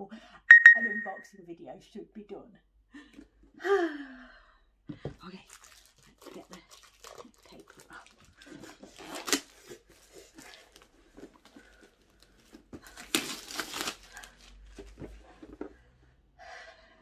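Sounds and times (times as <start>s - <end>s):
paper packaging crinkling and tearing: 5.2s - 10.9s, 12.2s - 14.9s.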